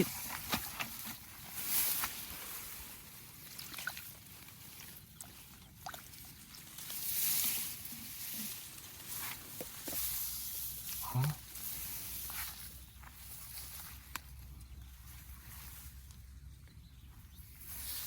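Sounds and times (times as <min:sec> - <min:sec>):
water sloshing and splashing: 0:00.0 - 0:11.0.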